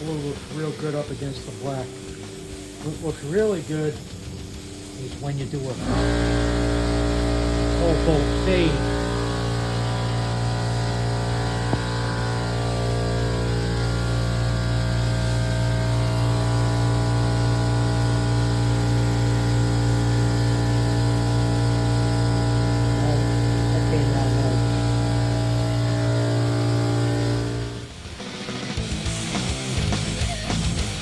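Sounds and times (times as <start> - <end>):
machine hum with low drone: 0.0 - 28.2.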